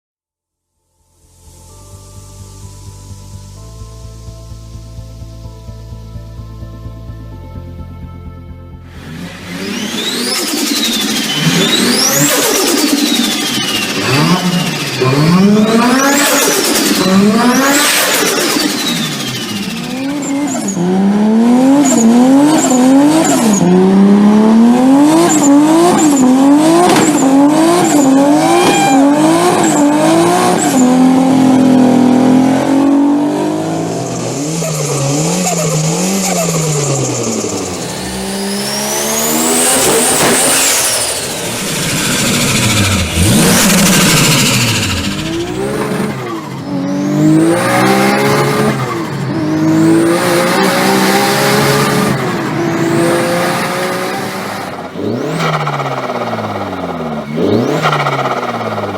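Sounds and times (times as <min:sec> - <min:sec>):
car engines revving: 0:08.9 - 0:58.9
high turbo whistle: 0:09.0 - 0:21.0, 0:25.0 - 0:31.3, 0:33.8 - 0:58.7
car passing by: 0:37.8 - 0:46.6
turbo flutter: 0:39.3 - 0:46.4.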